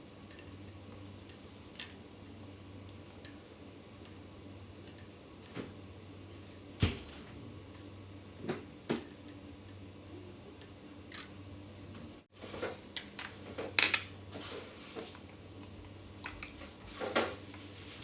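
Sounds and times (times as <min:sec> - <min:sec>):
utensils clicking against a dish: 0:16.2 - 0:16.6.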